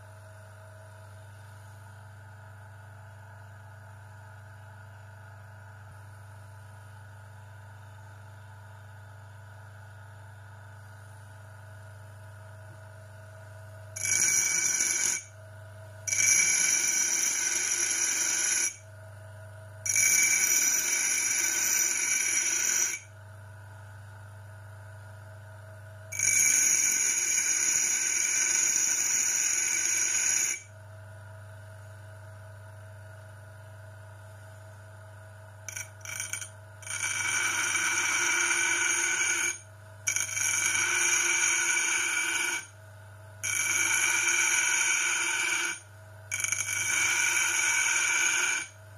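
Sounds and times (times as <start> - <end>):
high ringing whine of grinding metal: 13.9 - 15.4, 16.0 - 18.9, 19.8 - 23.2, 26.1 - 30.7, 35.7 - 42.8, 43.4 - 48.8.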